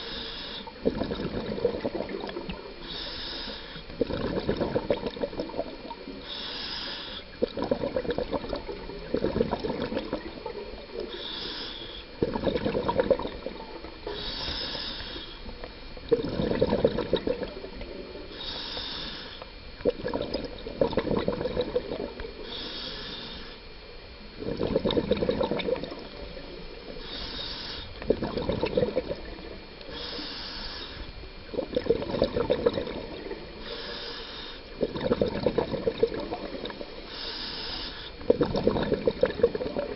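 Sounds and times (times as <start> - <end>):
regulator inhale hiss: 0.0 - 0.9, 2.1 - 4.0, 6.0 - 7.4, 11.0 - 12.2, 13.3 - 15.7, 18.2 - 19.6, 21.9 - 23.8, 26.1 - 28.2, 29.4 - 31.6, 33.3 - 34.9, 36.2 - 38.3
gurgling exhaled bubbles: 0.7 - 2.8, 3.8 - 6.2, 7.3 - 11.2, 12.2 - 14.6, 15.5 - 18.3, 19.7 - 22.3, 24.4 - 26.7, 27.9 - 29.8, 31.4 - 33.7, 34.7 - 37.1, 38.1 - 39.9.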